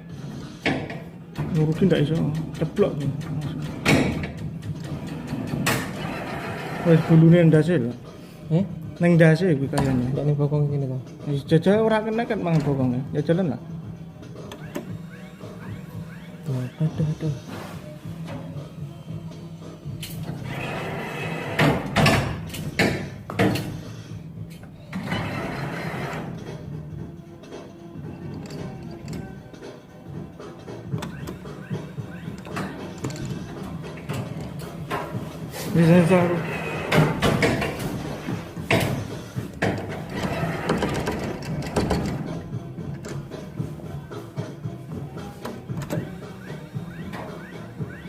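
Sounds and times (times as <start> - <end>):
claw machine knocking and rattling: 0.6 - 7.1, 36.4 - 43.6
sharp clicks and rattles: 1.4 - 6.1.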